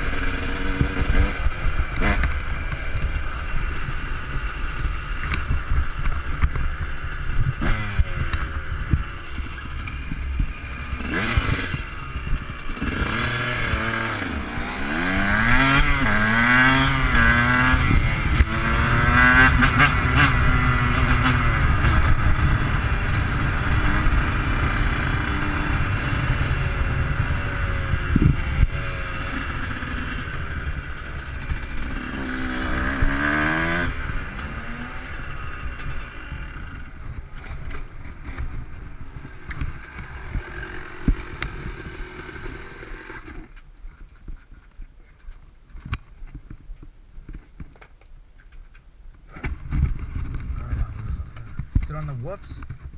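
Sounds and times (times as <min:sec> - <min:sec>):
two-stroke engine revving: 0:00.0 - 0:36.9, 0:39.2 - 0:43.5
wind rumble on microphone: 0:00.0 - 0:42.5, 0:49.2 - 0:52.9.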